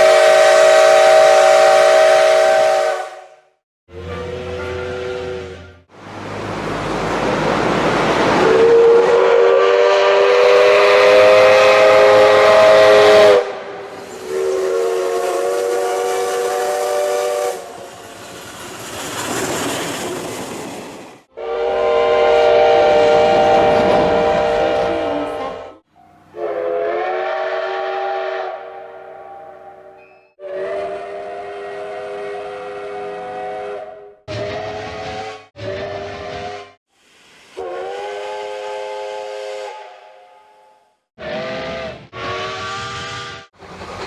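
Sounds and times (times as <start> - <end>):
steam locomotive whistle blasts: 0.0 - 5.9, 8.3 - 17.9, 21.3 - 36.8, 37.5 - 43.6
steam hissing: 13.3 - 21.3.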